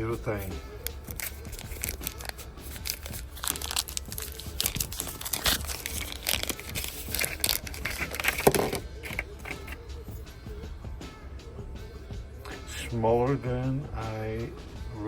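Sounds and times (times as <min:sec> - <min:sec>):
packaging crinkling and tearing: 0:00.8 - 0:09.8
packaging snap: 0:00.8 - 0:09.8.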